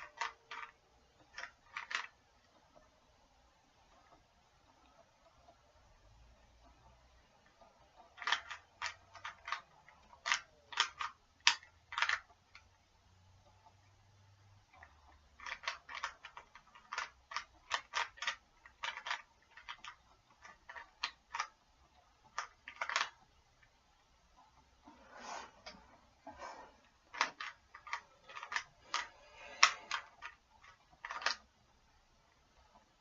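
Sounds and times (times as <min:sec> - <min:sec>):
puzzle cube clicking as turned: 0:00.0 - 0:02.2, 0:08.0 - 0:12.7, 0:14.7 - 0:21.6, 0:22.3 - 0:23.2, 0:27.1 - 0:31.5.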